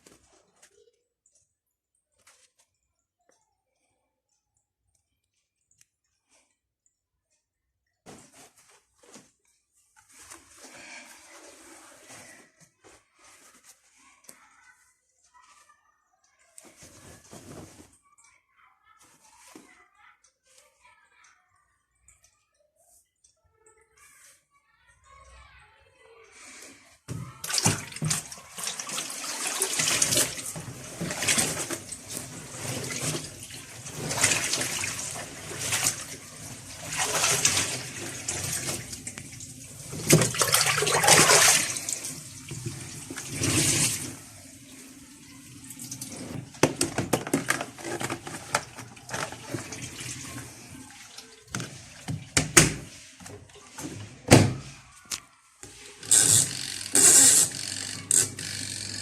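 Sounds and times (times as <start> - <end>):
water sloshing in washing machine: 27.1 - 54.8.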